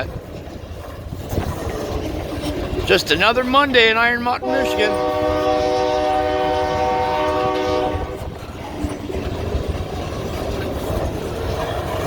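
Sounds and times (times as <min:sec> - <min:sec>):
train rolling rumble: 0:00.0 - 0:12.0
locomotive air horn: 0:04.4 - 0:08.3.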